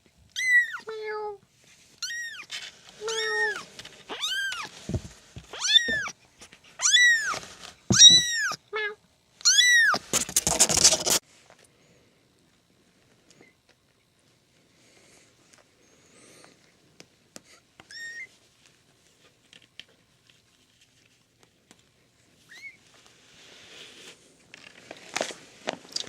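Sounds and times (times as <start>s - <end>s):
scratchy rustling: 1.7s - 8.2s, 10.0s - 11.2s
kitten mewing: 6.8s - 8.9s.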